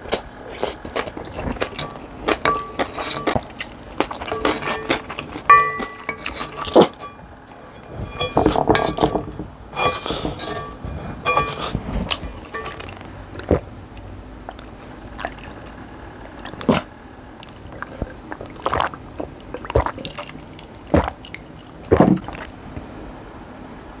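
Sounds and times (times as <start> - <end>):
bites and chewing: 0.0 - 7.9, 9.9 - 22.9
wet mouth sounds: 14.5 - 22.9.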